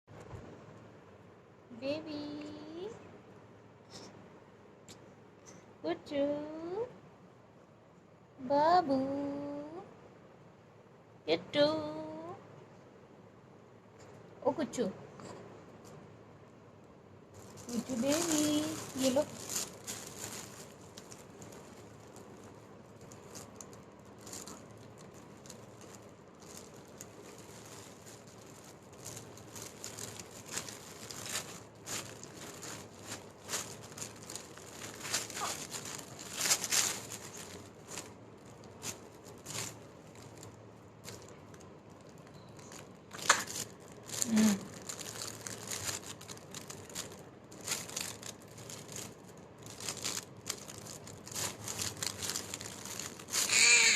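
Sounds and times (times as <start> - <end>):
crinkling and rustling: 17.3 - 53.9.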